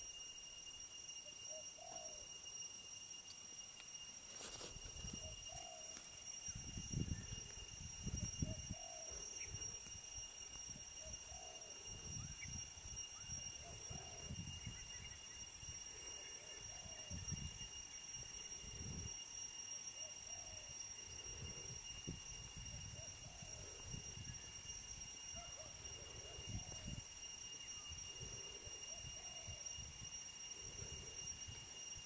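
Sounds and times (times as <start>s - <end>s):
high-pitched hum: 0.0s - 32.0s
dove cooing: 1.5s - 2.2s, 5.2s - 5.9s, 8.4s - 9.5s, 11.0s - 11.9s, 13.6s - 14.4s, 23.0s - 23.8s, 29.0s - 29.5s.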